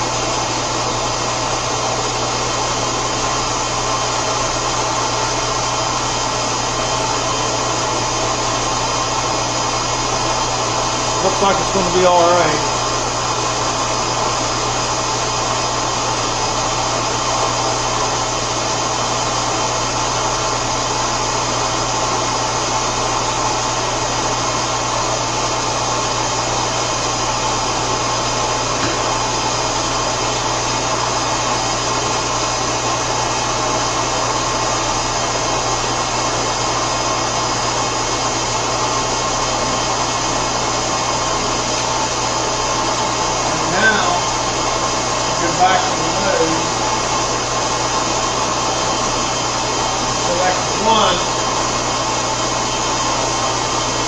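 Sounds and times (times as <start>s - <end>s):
low electrical hum: 38.7s - 53.5s.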